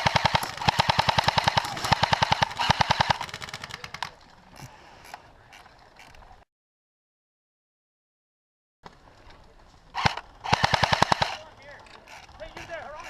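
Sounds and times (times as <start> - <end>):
airsoft rifle full-auto bursts: 0.0 - 4.1, 10.0 - 12.7.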